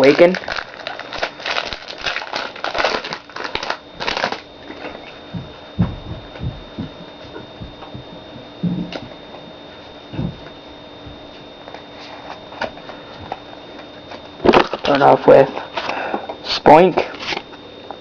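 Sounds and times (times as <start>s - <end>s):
foil wrapper crinkling: 0.0s - 5.2s
soft low thumps: 5.0s - 9.5s, 10.1s - 11.4s.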